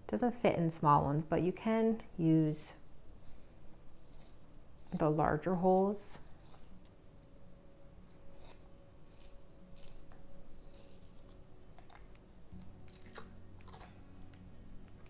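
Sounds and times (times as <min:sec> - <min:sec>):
crayon scraping in pencil sharpener: 0:03.2 - 0:06.7.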